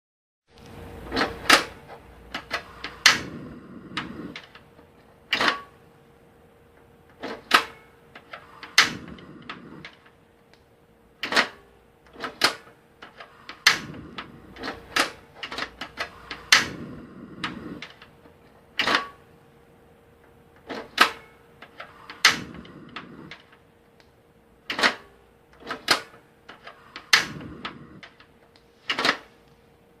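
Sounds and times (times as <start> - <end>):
rushing gas and flame: 2.4 - 4.8, 7.6 - 10.2, 12.4 - 18.4, 21.8 - 23.6, 26.7 - 28.2.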